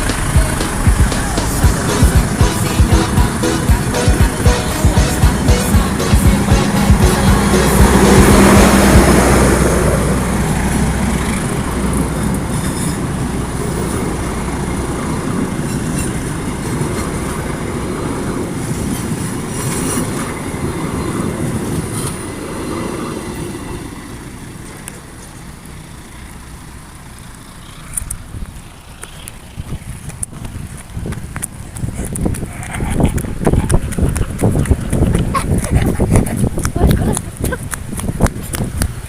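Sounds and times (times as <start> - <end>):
train wheels rolling over rails: 0.0 - 25.7
low locomotive drone: 0.0 - 39.0.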